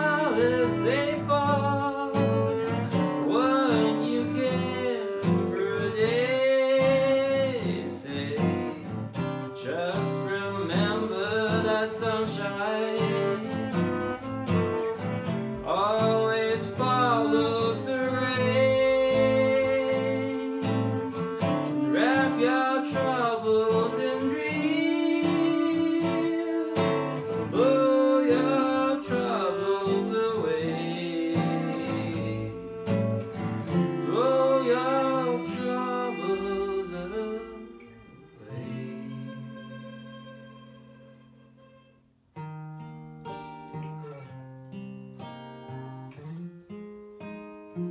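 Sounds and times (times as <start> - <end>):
bowed string melody: 0.0 - 43.0
acoustic guitar chords: 0.0 - 47.9.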